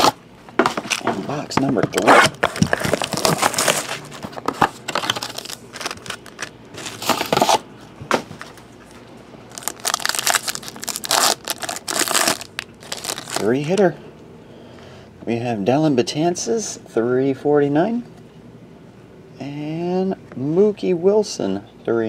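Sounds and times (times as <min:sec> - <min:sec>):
plastic wrapping crinkling: 0:02.2 - 0:07.6, 0:09.5 - 0:13.6.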